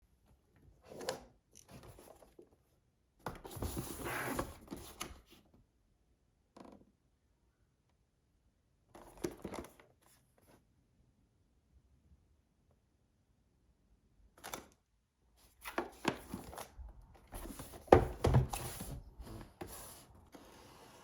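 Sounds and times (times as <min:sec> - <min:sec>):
packaging rustling and scraping: 0:15.6 - 0:21.0.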